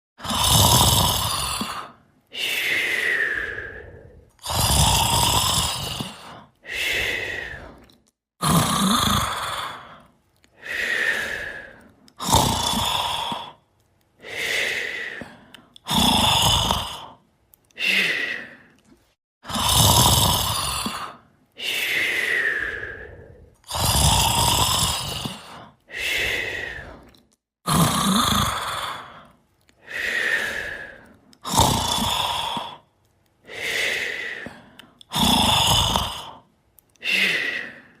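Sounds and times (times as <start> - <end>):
snoring in sleep: 0.2 - 2.0, 2.6 - 7.8, 8.4 - 10.0, 10.9 - 13.6, 14.7 - 17.2, 19.5 - 21.2, 22.3 - 27.1, 27.7 - 29.3, 30.1 - 32.8, 33.8 - 36.4.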